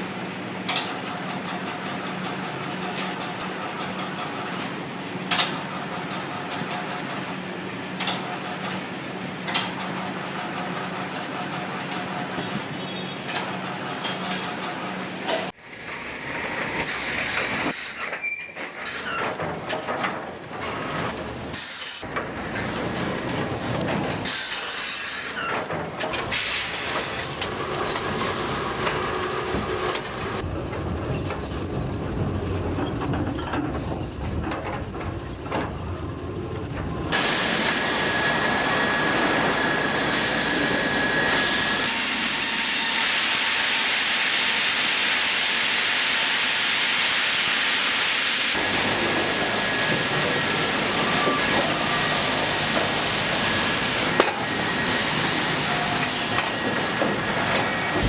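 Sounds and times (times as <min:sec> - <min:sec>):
wood-processing machinery hissing: 0:21.5 - 0:22.1, 0:24.2 - 0:25.5, 0:26.1 - 0:30.5, 0:37.1 - 0:58.0.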